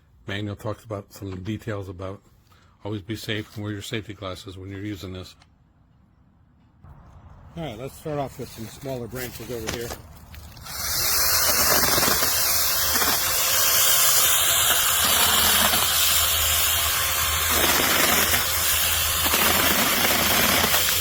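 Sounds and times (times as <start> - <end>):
mini chainsaw cutting branch: 9.4 - 21.0.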